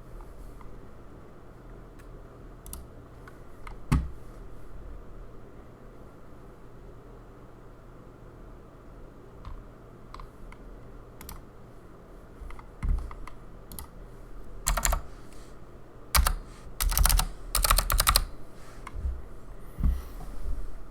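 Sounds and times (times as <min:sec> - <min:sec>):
clicky mechanical keyboard typing: 0:02.6 - 0:04.0, 0:11.2 - 0:11.4, 0:12.5 - 0:14.0, 0:14.6 - 0:15.1, 0:16.1 - 0:18.3.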